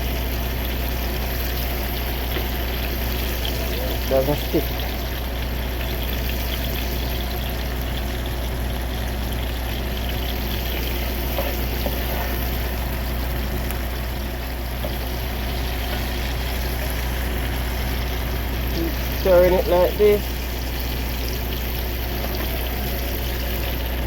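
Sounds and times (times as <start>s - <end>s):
low hum: 0.0s - 24.0s
vegetables sizzling in a skillet: 0.0s - 24.0s.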